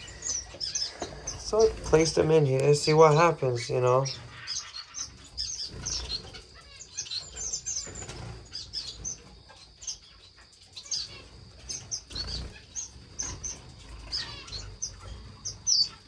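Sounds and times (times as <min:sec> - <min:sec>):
finches chirping: 0:00.0 - 0:16.0
wings fluttering: 0:00.0 - 0:16.0.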